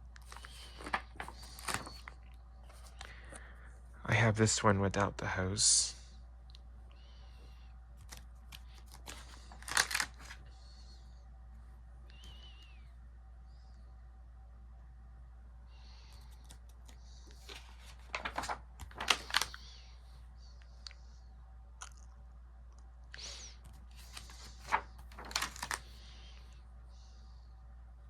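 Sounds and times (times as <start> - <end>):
book pages rustling: 0.2 - 3.1, 8.0 - 10.5, 16.2 - 19.6, 23.6 - 26.0.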